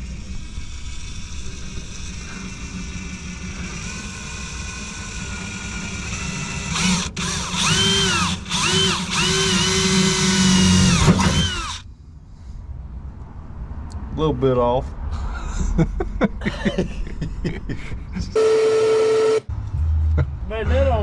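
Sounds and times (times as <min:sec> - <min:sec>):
power drill drilling: 0:03.6 - 0:11.8, 0:18.4 - 0:19.4.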